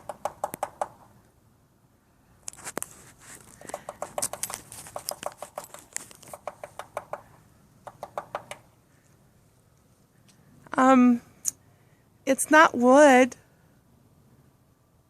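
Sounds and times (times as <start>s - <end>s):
bird pecking on siding: 0.0s - 1.2s, 2.6s - 9.2s.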